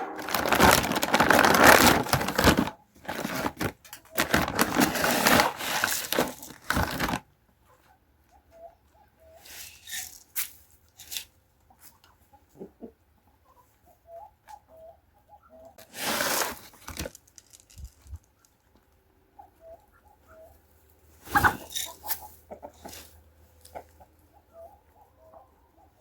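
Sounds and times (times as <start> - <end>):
loud rustling: 0.0 - 7.2
chickens clucking: 7.2 - 16.0, 18.3 - 26.0.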